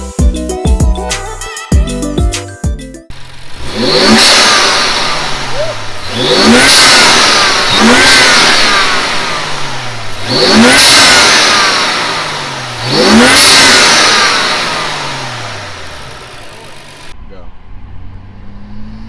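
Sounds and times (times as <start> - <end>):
car engine revving: 3.1 - 17.2.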